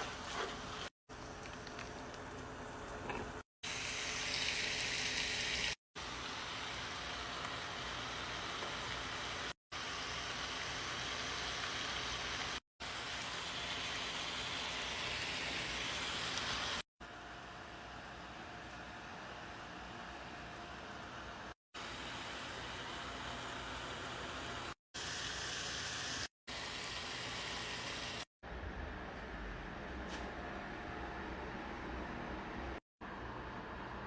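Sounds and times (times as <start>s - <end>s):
food sizzling in a frying pan: 3.7s - 16.8s.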